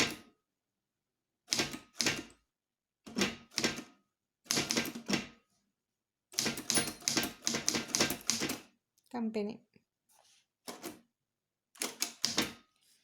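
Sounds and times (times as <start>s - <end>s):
typewriter keys striking: 6.4s - 8.6s, 11.8s - 12.6s.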